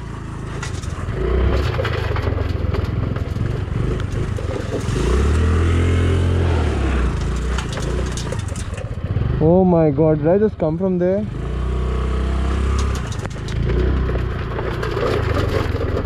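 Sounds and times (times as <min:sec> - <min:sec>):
motorcycle engine revving: 0:00.0 - 0:16.0
stones and mud clattering: 0:00.2 - 0:09.1, 0:12.6 - 0:16.0.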